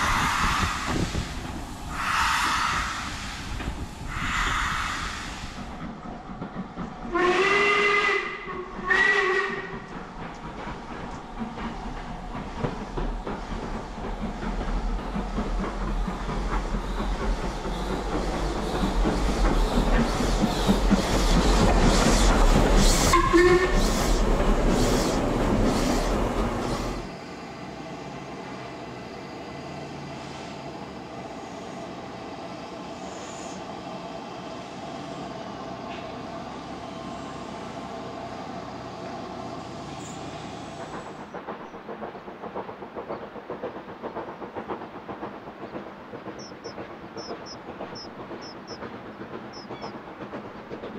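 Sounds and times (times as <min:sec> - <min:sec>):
steam locomotive exhaust: 0:00.0 - 0:27.7
locomotive whistle: 0:07.1 - 0:09.7, 0:23.0 - 0:24.0.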